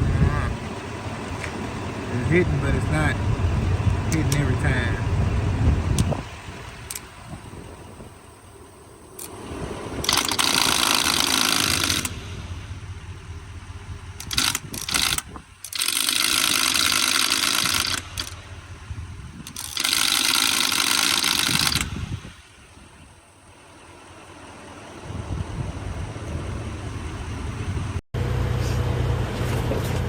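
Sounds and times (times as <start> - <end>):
starter cranking diesel engine: 0.0 - 28.0
starter clicks: 3.9 - 4.6, 5.9 - 7.1, 9.1 - 9.4, 10.0 - 12.2, 14.2 - 18.5, 19.4 - 22.0.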